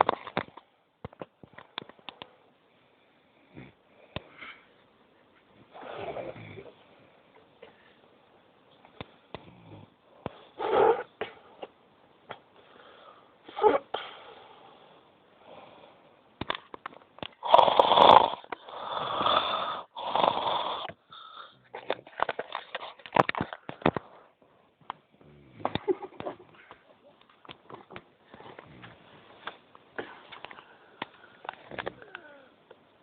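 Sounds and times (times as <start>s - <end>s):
person snoring loudly: 5.7s - 6.7s, 17.4s - 21.6s.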